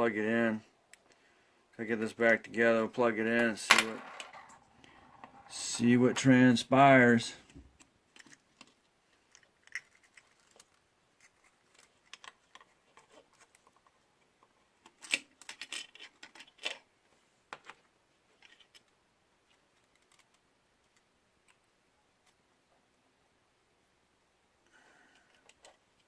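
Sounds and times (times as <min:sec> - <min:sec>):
small parts and tools clicking: 0:07.8 - 0:16.8, 0:17.6 - 0:21.6, 0:25.1 - 0:26.0.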